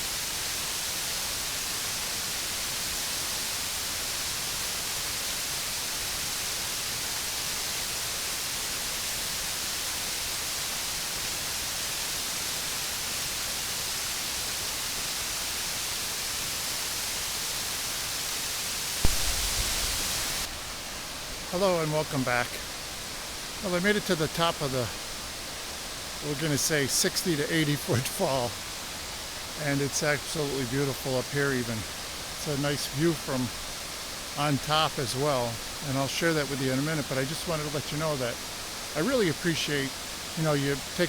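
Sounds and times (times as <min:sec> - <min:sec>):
waterfall roaring: 0:19.0 - 0:41.0.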